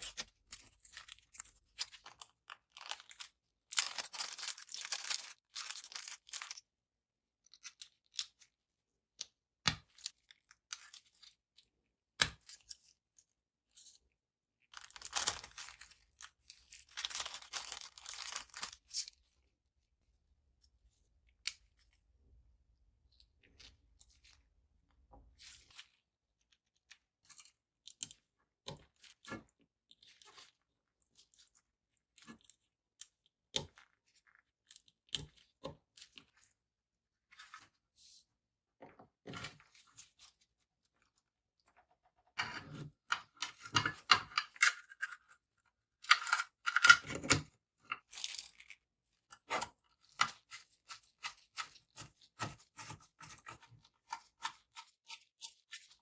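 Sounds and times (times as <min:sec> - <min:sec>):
packaging crinkling and rustling: 0:00.0 - 0:06.6, 0:14.7 - 0:18.8.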